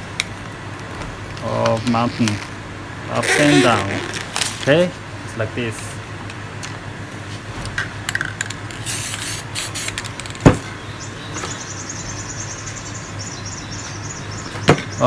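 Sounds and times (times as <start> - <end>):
steady low hum: 0.0 - 14.5
spray-paint can hissing: 8.8 - 10.1.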